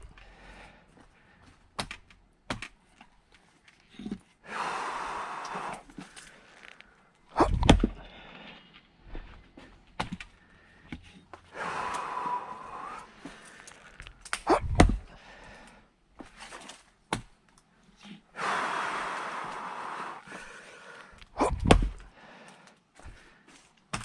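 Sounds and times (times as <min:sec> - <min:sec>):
heavy breathing: 0:00.0 - 0:01.6, 0:03.8 - 0:16.0, 0:18.0 - 0:23.7
axe blows on a log: 0:21.4 - 0:22.0.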